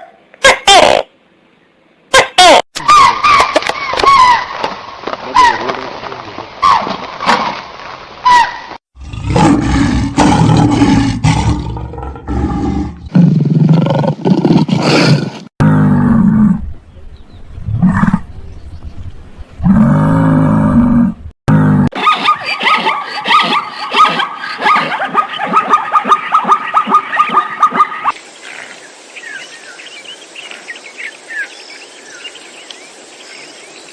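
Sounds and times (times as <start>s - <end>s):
short high falling calls: 2.1s - 4.6s
large animal roaring deeply: 9.0s - 16.8s, 19.6s - 21.9s.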